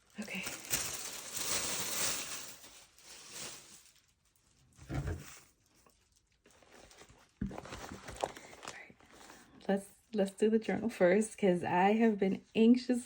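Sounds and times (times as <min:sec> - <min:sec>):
plastic bag crinkling and tearing: 0:00.0 - 0:09.4.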